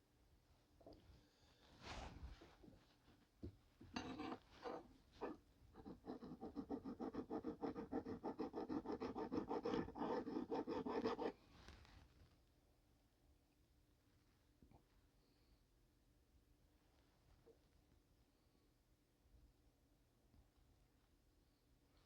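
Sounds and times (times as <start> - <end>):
hand file rasping on metal: 4.2 - 11.3.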